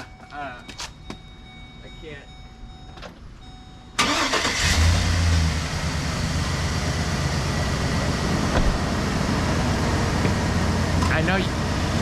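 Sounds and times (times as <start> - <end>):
van engine idling: 3.9 - 12.0.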